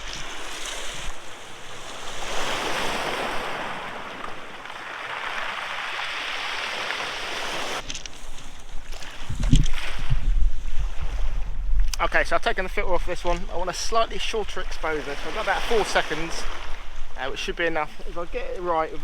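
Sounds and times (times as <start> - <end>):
sea waves breaking on beach: 0.0 - 11.6, 12.3 - 19.0.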